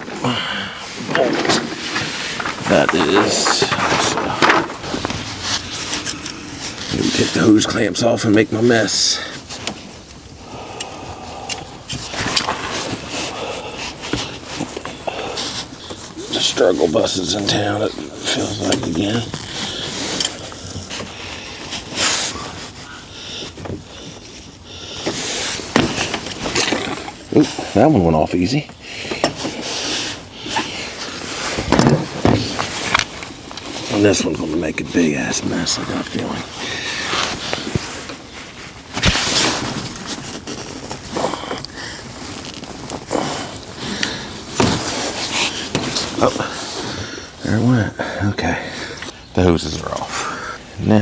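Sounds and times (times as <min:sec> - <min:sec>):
man breathing heavily: 0:00.0 - 0:02.6, 0:10.3 - 0:16.2, 0:19.6 - 0:26.0, 0:43.0 - 0:49.2, 0:50.1 - 0:50.8
rubber hose scraping and rubbing: 0:00.0 - 0:10.4, 0:11.9 - 0:47.9
rustling: 0:00.0 - 0:10.5, 0:11.6 - 0:50.2.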